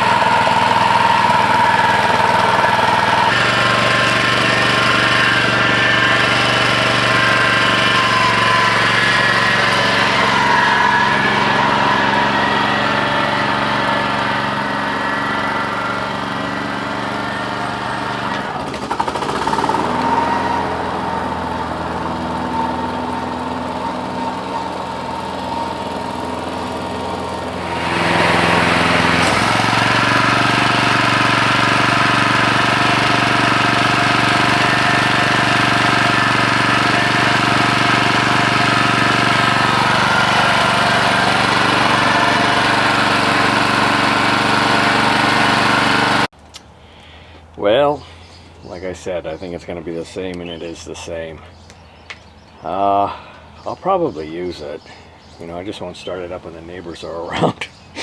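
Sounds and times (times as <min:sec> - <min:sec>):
lawn mower engine running: 0:00.0 - 0:58.0.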